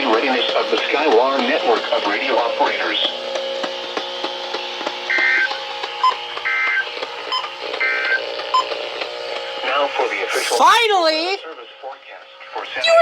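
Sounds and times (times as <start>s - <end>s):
steady background hum: 9.0s - 12.5s.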